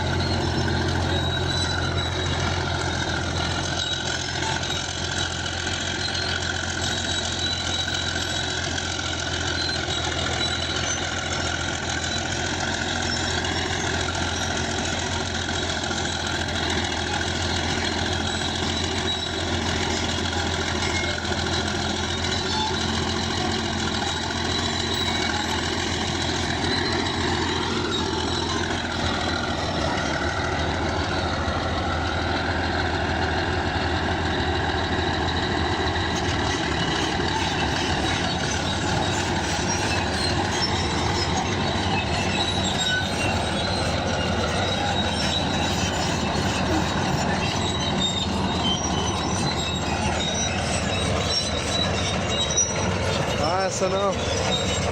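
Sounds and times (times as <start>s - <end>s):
bulldozer diesel engine running: 0.0s - 54.9s.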